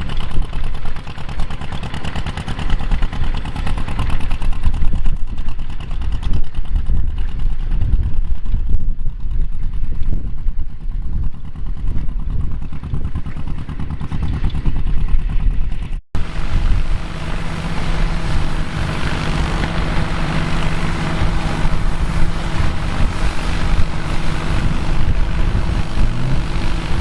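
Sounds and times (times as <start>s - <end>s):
farm machinery droning and clattering: 0.0s - 8.4s, 11.6s - 27.0s
engine firing rapidly: 0.0s - 8.5s, 11.4s - 27.0s.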